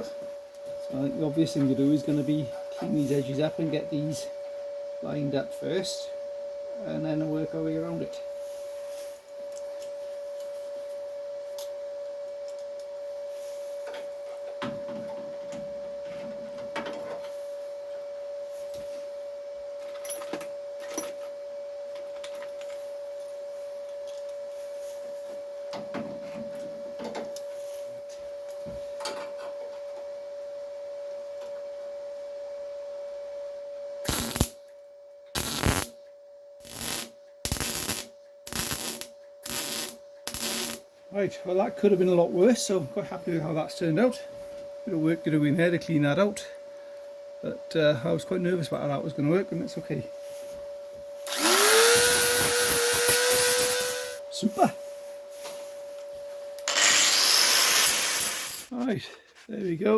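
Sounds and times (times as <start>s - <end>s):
high-pitched hum: 17.5s - 34.6s, 35.4s - 58.9s
crackling welding bursts: 34.1s - 34.6s, 35.4s - 35.9s, 36.6s - 40.8s, 51.3s - 54.2s, 56.6s - 58.7s.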